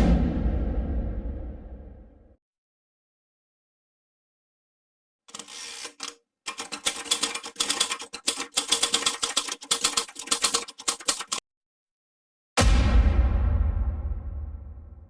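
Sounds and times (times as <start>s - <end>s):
booming impact: 0.0s - 2.2s, 12.6s - 15.0s
typewriter key clicks: 5.3s - 11.4s.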